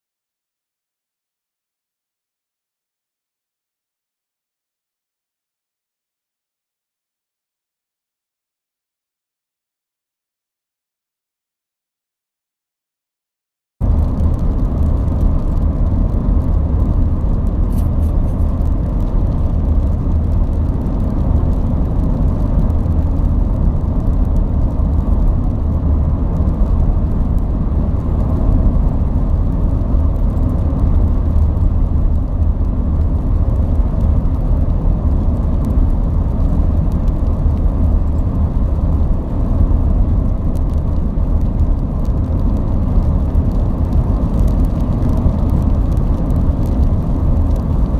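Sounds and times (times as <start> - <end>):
road noise: 13.8 - 47.9
vehicle driving rumble: 13.8 - 47.9.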